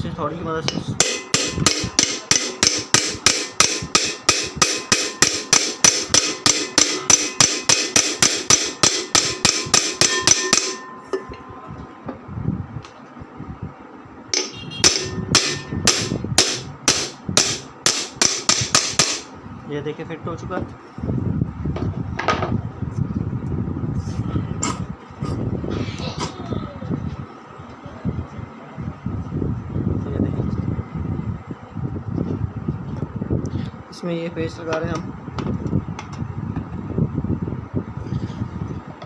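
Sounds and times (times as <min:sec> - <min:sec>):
hammer tapping metal cover: 0:00.7 - 0:11.4, 0:14.3 - 0:19.3.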